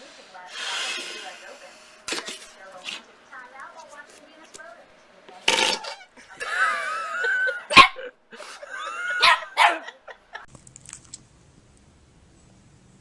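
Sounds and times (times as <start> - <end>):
dog barking: 7.7 - 8.0, 9.2 - 10.0.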